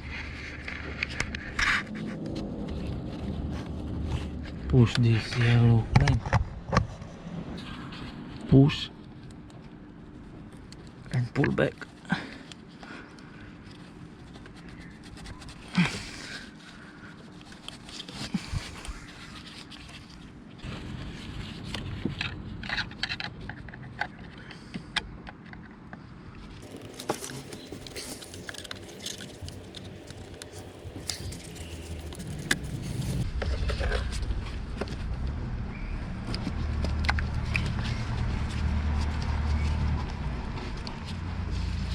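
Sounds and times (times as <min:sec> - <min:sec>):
scraping on plastic and metal: 0:26.6 - 0:34.1.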